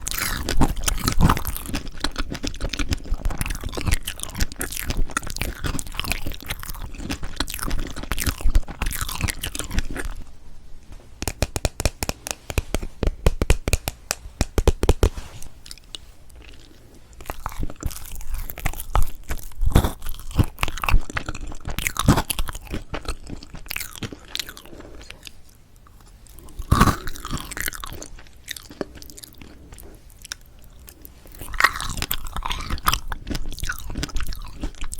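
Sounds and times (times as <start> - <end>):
person chewing cake: 0.0 - 34.9.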